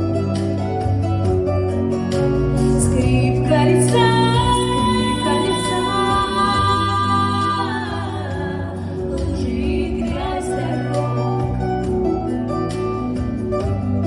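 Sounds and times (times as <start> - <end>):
backing track with bass line: 0.0 - 14.0
girls singing a duet: 3.0 - 11.6.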